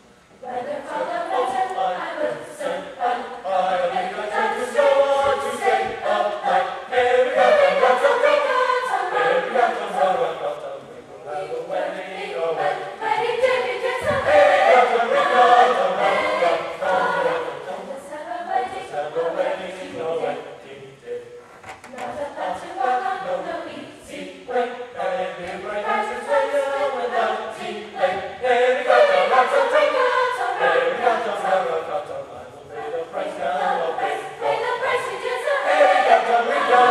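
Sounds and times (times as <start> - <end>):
mixed chorus singing in parts: 0.0 - 21.2, 21.9 - 36.9.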